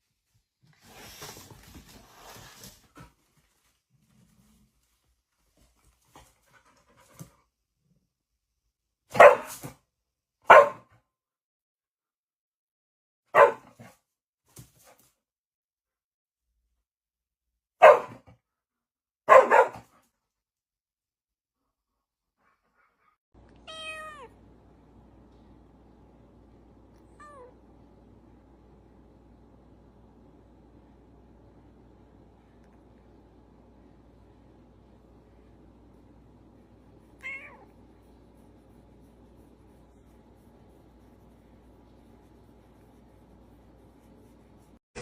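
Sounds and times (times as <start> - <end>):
cat meowing: 23.6 - 24.4, 27.1 - 27.6, 37.2 - 37.7.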